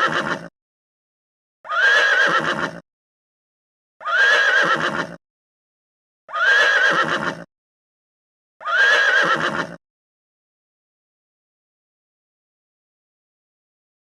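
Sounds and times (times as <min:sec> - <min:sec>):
horse whinnying: 0:00.0 - 0:00.5, 0:01.7 - 0:02.8, 0:04.0 - 0:05.2, 0:06.3 - 0:07.5, 0:08.6 - 0:09.8.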